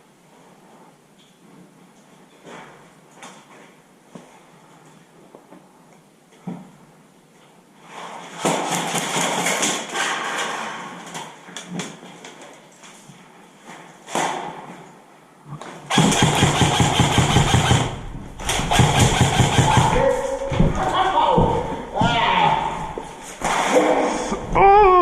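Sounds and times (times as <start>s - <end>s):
airsoft guns firing in bursts: 15.9s - 20.4s.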